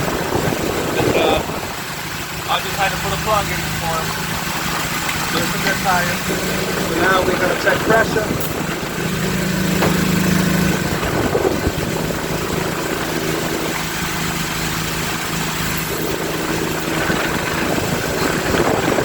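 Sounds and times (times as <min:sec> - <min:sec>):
portable generator humming: 0:00.0 - 0:19.0.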